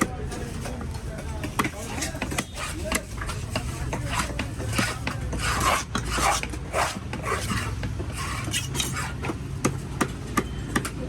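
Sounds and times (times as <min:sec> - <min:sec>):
knife scraping fish: 0:00.6 - 0:09.4.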